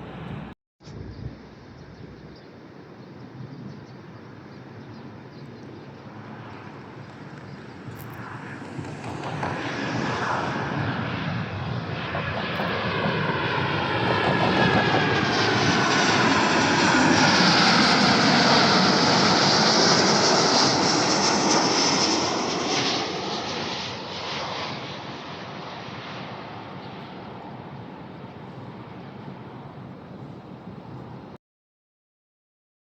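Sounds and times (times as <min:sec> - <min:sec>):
jet airliner passing by: 0:00.0 - 0:31.4.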